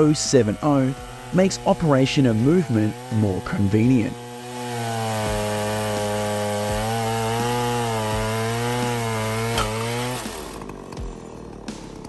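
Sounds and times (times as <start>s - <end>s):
chainsaw cutting wood at high revs: 0.0s - 12.0s.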